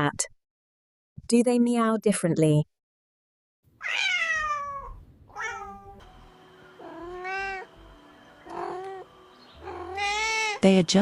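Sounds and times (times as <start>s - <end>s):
cat meowing: 3.8s - 6.0s, 6.8s - 7.7s, 8.4s - 10.6s.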